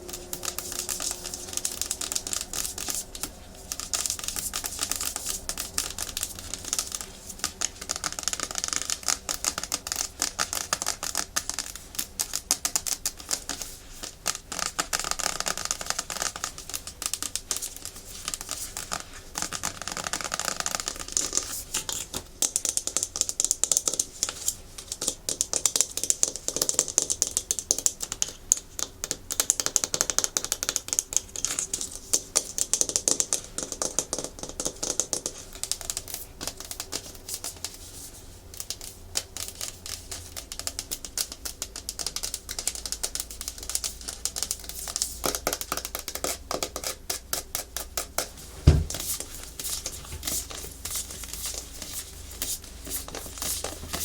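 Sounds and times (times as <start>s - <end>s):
loud knock: 48.6s - 49.0s.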